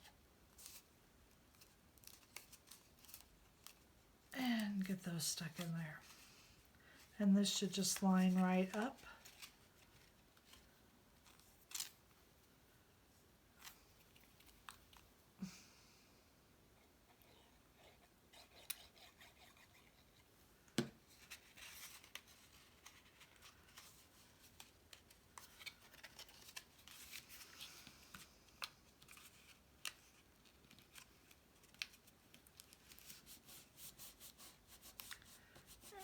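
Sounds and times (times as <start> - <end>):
paper rustling: 21.1 - 28.1.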